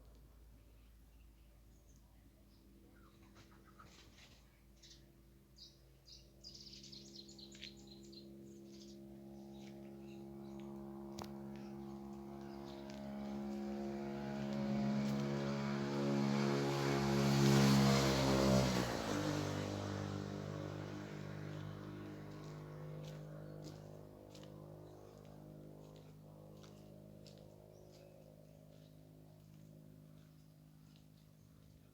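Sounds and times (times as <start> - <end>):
birds chirping: 1.1 - 18.3
vehicle passing by: 9.2 - 31.9.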